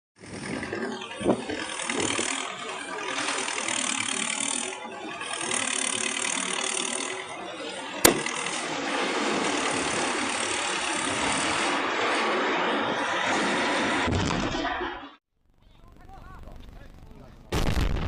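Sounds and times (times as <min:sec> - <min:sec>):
demolition machinery running: 0:00.2 - 0:14.6
sharp crack: 0:08.0 - 0:08.6.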